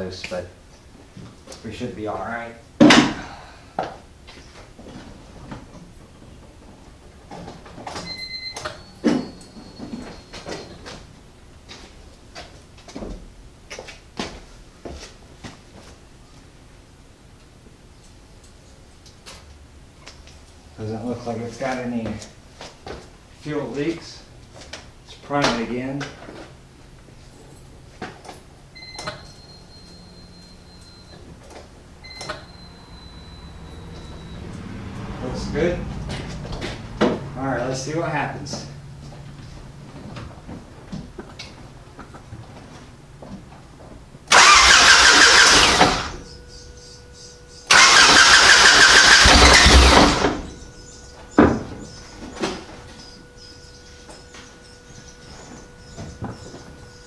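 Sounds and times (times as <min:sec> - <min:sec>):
fuel pump whining: 0:44.2 - 0:57.0
car engine cranking: 0:44.3 - 0:46.6, 0:47.6 - 0:50.9.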